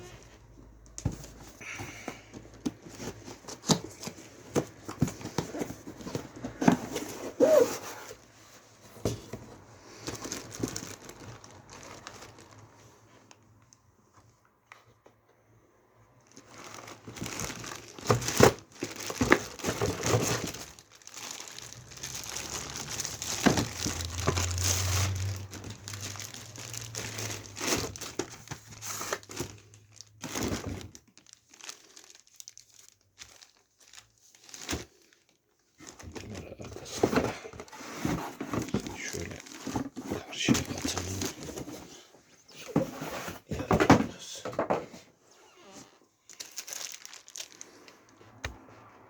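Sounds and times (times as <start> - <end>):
plastic packaging crinkling: 9.8 - 13.4, 16.3 - 41.9, 45.6 - 48.4.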